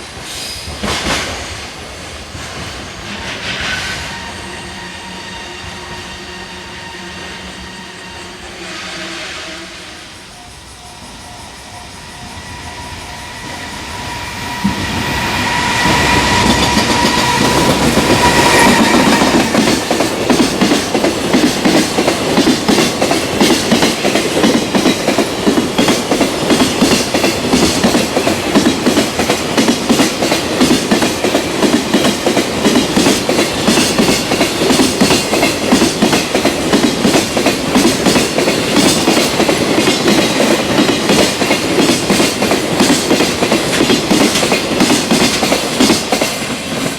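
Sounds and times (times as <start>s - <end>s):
locomotive motor whine: 10.2s - 19.6s
train wheels clattering over rail joints: 15.8s - 46.9s.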